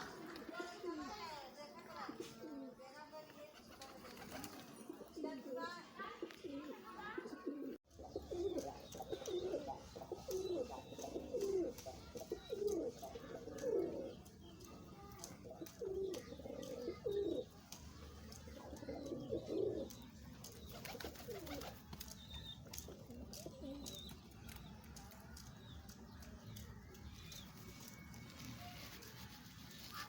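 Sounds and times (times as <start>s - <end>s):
pigeons cooing: 7.2s - 14.3s, 15.6s - 17.5s, 18.6s - 20.1s, 20.8s - 21.8s.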